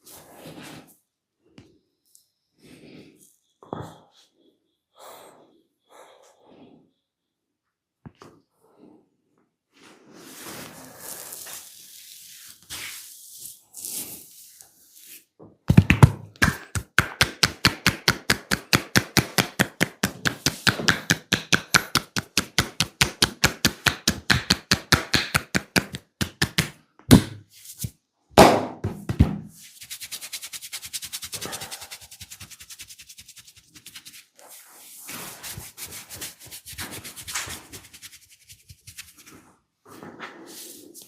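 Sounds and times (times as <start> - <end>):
massage slaps: 15.7 - 34.1
faint rubbing: 29.6 - 39.5.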